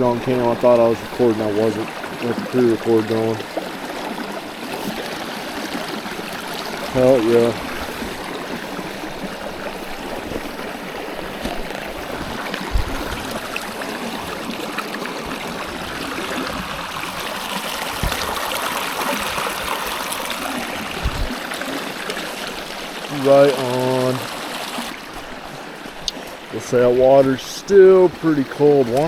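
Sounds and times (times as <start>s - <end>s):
stream running over rocks: 0.0s - 29.0s
dull low thumps: 8.9s - 14.4s, 17.9s - 18.5s, 20.8s - 21.5s.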